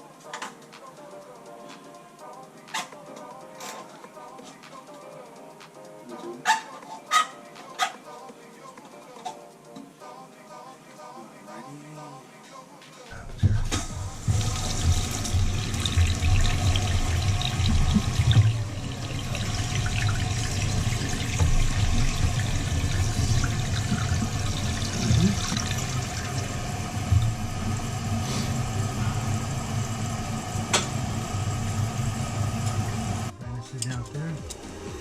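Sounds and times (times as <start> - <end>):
toilet tank filling with water: 13.2 - 33.3.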